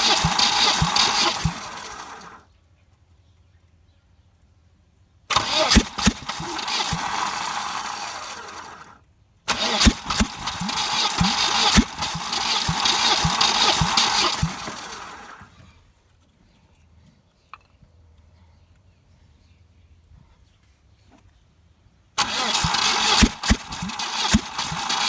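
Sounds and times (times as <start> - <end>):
engine coughing: 0.0 - 2.4, 5.3 - 8.9, 9.5 - 15.5, 22.2 - 25.0
engine cranking on starter: 0.0 - 2.4, 5.3 - 15.7, 22.2 - 25.0.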